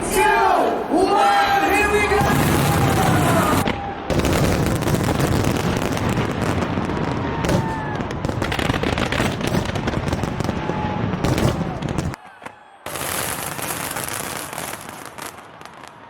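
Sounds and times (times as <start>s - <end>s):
fireworks crackling and banging: 1.9s - 16.0s.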